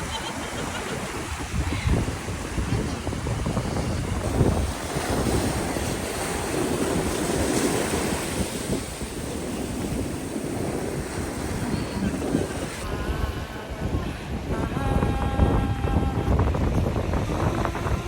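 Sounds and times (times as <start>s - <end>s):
ocean surf washing onto beach: 0.0s - 18.0s
wind buffeting microphone: 0.0s - 18.0s.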